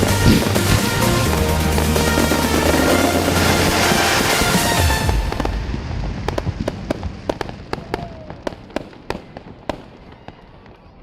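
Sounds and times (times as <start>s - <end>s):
music: 0.0s - 6.0s
fireworks cracking and popping: 0.0s - 10.9s.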